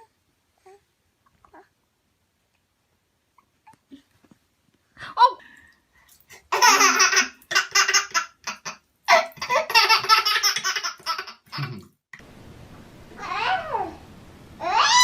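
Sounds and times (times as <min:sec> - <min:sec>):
child calling out: 0:13.2 - 0:14.0, 0:14.6 - 0:15.0.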